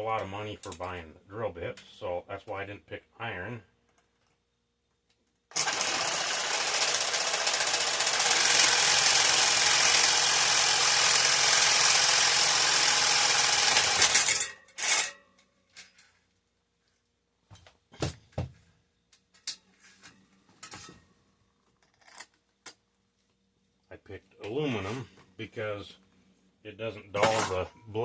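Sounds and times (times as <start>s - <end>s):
power tool cutting metal: 5.5s - 15.2s.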